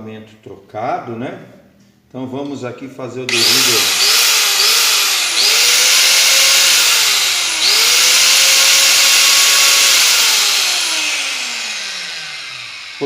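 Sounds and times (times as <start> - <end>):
angle grinder running: 3.3 - 13.0
grinder spinning down whine: 3.3 - 13.0.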